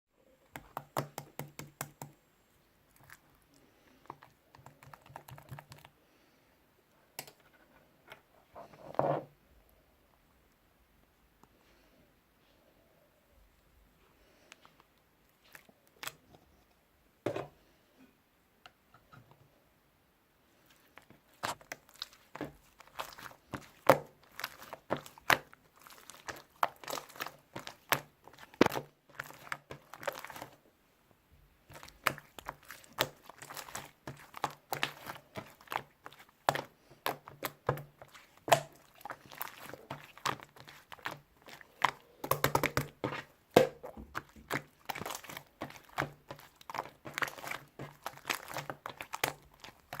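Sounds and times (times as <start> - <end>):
slime clicking and crackling: 21.3 - 30.6, 31.7 - 50.0.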